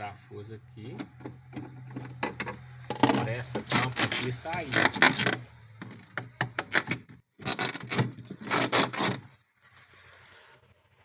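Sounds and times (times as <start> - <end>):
screwdriver scraping and clicking: 3.6 - 9.2.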